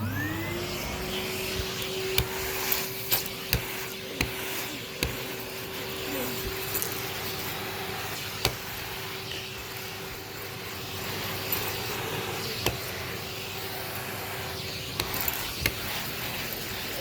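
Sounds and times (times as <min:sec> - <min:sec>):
vacuum cleaner running: 0:00.0 - 0:17.0.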